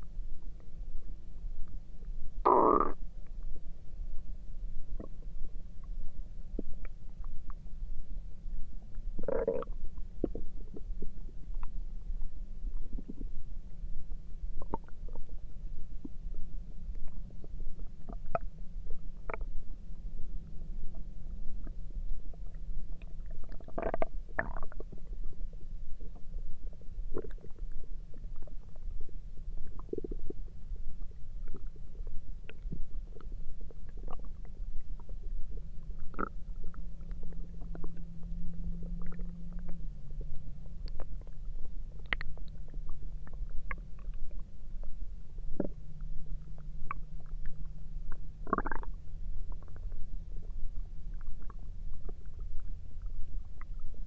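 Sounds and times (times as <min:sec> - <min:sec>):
steady low rumble: 0:00.0 - 0:54.0
long low stomach growl: 0:02.4 - 0:03.1, 0:09.1 - 0:11.7, 0:20.9 - 0:54.0
stomach gurgles and squeaks: 0:02.4 - 0:03.5, 0:04.9 - 0:07.7, 0:08.9 - 0:11.8, 0:12.7 - 0:13.5, 0:14.6 - 0:15.4, 0:16.9 - 0:19.6, 0:20.9 - 0:54.0.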